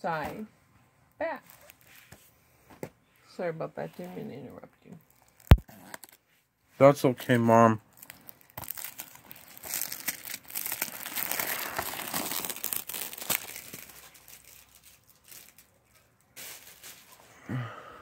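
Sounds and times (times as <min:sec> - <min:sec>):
plastic wrapping crinkling and tearing: 0:01.4 - 0:02.1, 0:04.9 - 0:06.2, 0:07.9 - 0:17.2.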